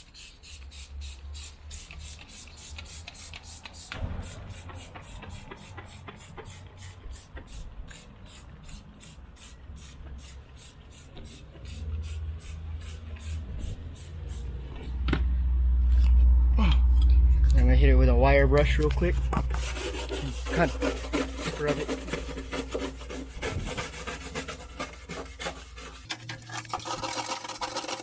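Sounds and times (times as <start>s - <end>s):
spray bottle hissing: 0.0s - 14.6s
low rumble: 13.4s - 19.8s.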